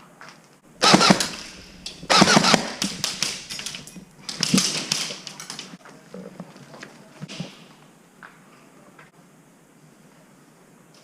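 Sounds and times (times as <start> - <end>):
airsoft gun rapid shots: 0.8 - 3.5.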